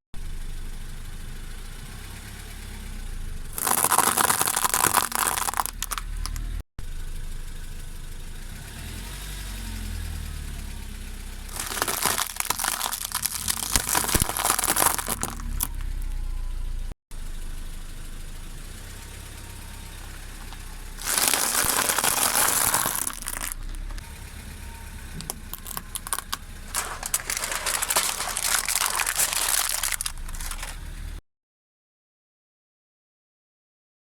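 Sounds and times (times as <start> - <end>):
car engine idling: 0.2 - 2.0, 2.6 - 8.5, 10.0 - 31.2
tyres crunching brittle objects: 3.6 - 6.5, 11.5 - 16.0, 20.4 - 24.0, 25.2 - 30.8.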